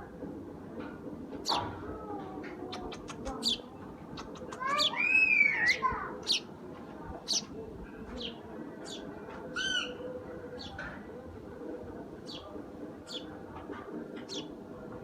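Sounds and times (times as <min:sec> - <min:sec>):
sparrows chirping: 0:01.4 - 0:01.8, 0:02.5 - 0:10.9, 0:11.9 - 0:14.6.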